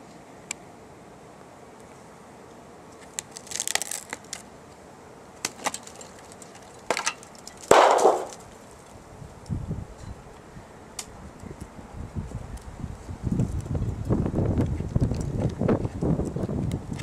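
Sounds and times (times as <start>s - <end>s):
cracks and snaps: 3.0s - 4.5s, 5.4s - 8.6s.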